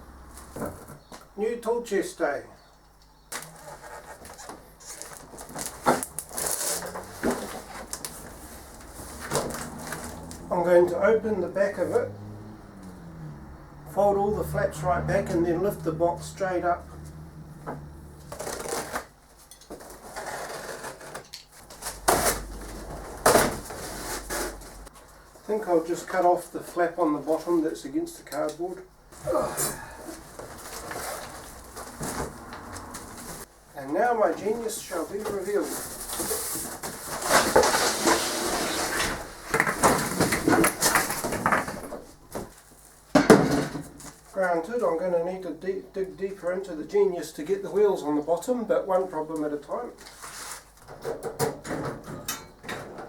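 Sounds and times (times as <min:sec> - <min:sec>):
cardboard box scraping and rustling: 0:03.5 - 0:10.5, 0:18.3 - 0:19.1, 0:19.7 - 0:24.9, 0:30.1 - 0:33.5, 0:35.2 - 0:42.8.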